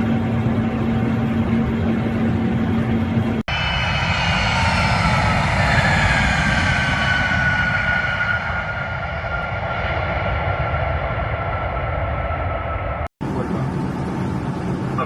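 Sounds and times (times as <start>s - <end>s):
aircraft engines rumbling: 0.0s - 15.0s
high whining tones falling: 3.5s - 13.1s.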